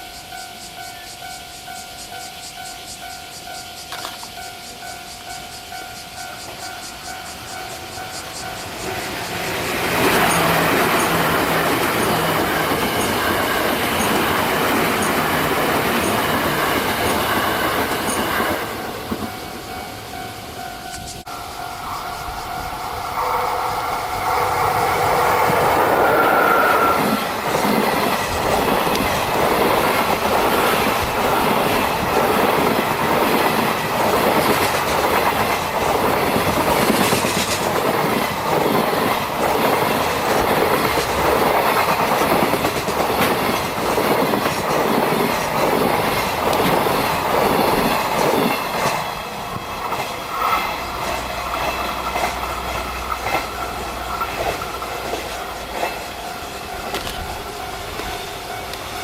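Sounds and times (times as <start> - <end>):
level-crossing bell ringing: 0.0 - 16.7, 18.0 - 23.1
train wheels clattering over rails: 1.7 - 59.0.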